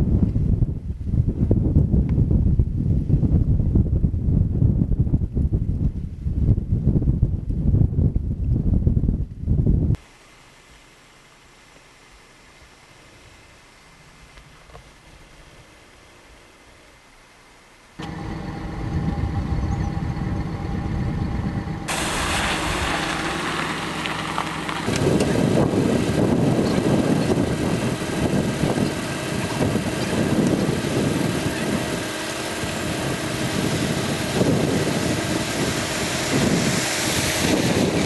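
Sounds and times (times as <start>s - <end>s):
steady hiss: 10.0s - 18.2s, 21.9s - 29.3s
rough uneven rumbling: 18.0s - 38.0s
vehicle engine humming: 18.0s - 38.0s.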